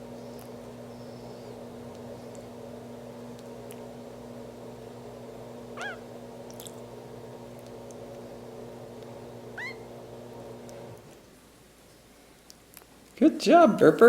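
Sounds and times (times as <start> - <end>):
steady low hum: 0.0 - 11.2.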